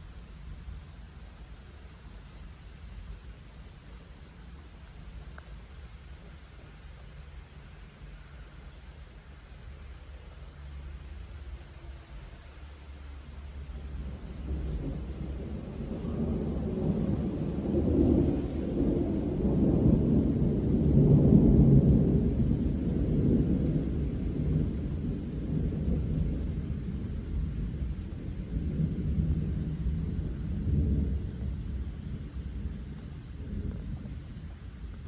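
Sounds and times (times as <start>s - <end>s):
falling rain: 0.0s - 35.0s
thunder rolling: 13.7s - 35.0s.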